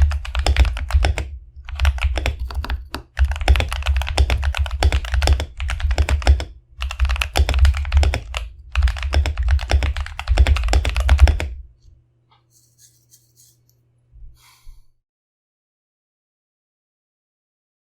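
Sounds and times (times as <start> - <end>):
fast mechanical keyboard typing: 0.0 - 11.6.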